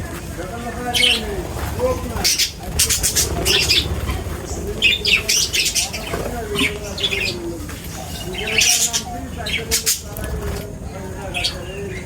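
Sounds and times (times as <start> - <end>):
birds calling: 0.0 - 12.0
descending drawn-out bird call: 0.9 - 10.0.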